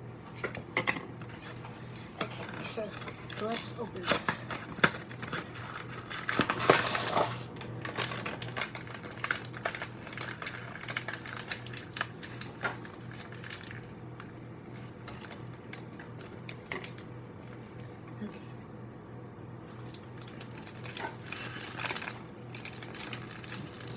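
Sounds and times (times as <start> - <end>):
steady low hum: 0.0 - 23.9
package rustling: 1.2 - 17.9, 19.6 - 23.9.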